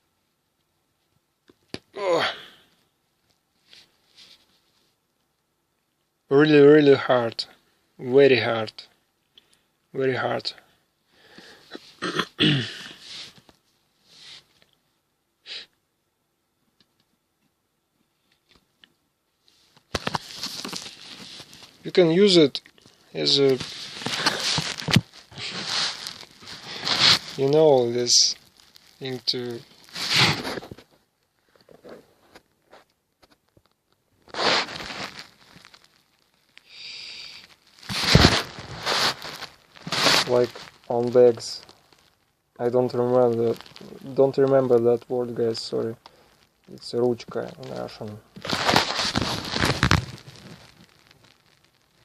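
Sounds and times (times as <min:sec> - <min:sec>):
person sighing: 0:02.0 - 0:02.7, 0:11.2 - 0:13.1, 0:36.7 - 0:37.4
rustling and crinkling: 0:03.2 - 0:05.0, 0:18.2 - 0:36.7, 0:37.4 - 0:52.0
faint scraping rustle: 0:03.6 - 0:05.0, 0:19.4 - 0:33.4, 0:34.3 - 0:36.0, 0:37.4 - 0:46.0, 0:46.8 - 0:51.4
person breathing: 0:11.1 - 0:11.9, 0:36.7 - 0:37.5
person sniffing: 0:11.2 - 0:13.4, 0:15.4 - 0:15.8, 0:23.8 - 0:27.4, 0:36.7 - 0:40.3
loud rustling: 0:23.2 - 0:28.3, 0:37.8 - 0:40.8.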